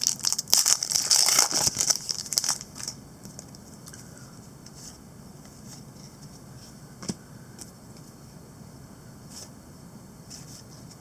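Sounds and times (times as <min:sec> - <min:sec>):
foil wrapper tearing and crinkling: 0:00.0 - 0:03.0.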